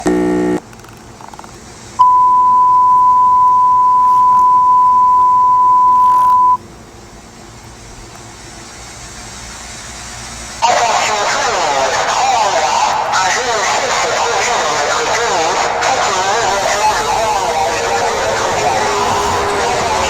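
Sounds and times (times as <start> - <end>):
buzzy alarm tone: 0.0 - 0.6, 2.0 - 6.6, 10.6 - 20.0
steady high beep: 2.0 - 6.6.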